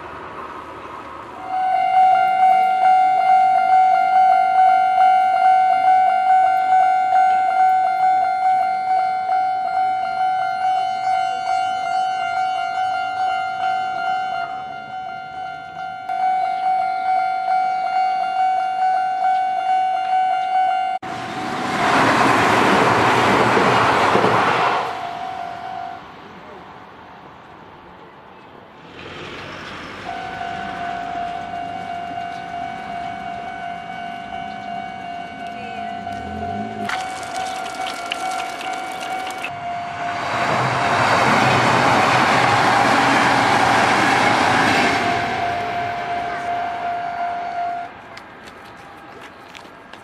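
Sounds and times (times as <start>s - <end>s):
level crossing warning tone: 1.4s - 21.0s, 30.0s - 37.2s, 38.4s - 41.0s, 44.6s - 47.9s
electric train rushing past: 21.1s - 26.0s, 28.8s - 47.8s.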